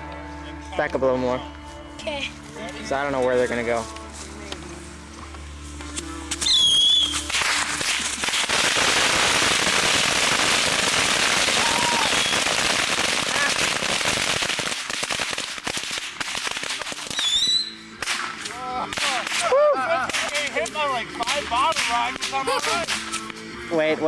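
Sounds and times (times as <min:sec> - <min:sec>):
bottle rockets crackling and popping: 0:06.3 - 0:23.3
firework whistle: 0:06.4 - 0:14.8, 0:17.0 - 0:18.3.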